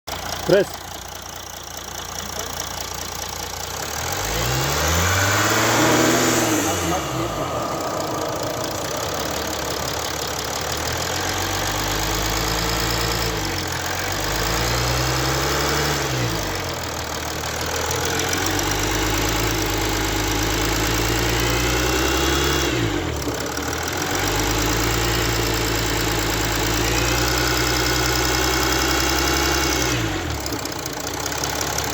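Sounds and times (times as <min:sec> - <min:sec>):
diesel engine revving: 0:00.1 - 0:31.9
high-pitched whistle: 0:05.8 - 0:11.8.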